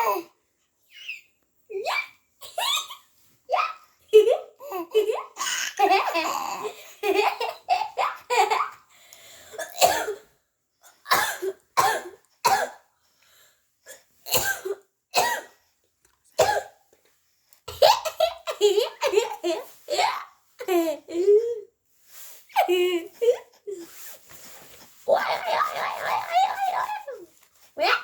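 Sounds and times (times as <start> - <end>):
baby laughing: 4.1 - 8.8, 17.7 - 21.6, 25.1 - 27.3.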